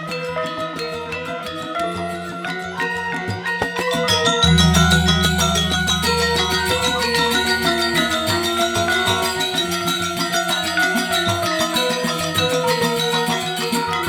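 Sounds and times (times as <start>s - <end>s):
metallophones playing fast strokes: 4.3s - 14.0s
deep gong tone: 4.4s - 10.6s.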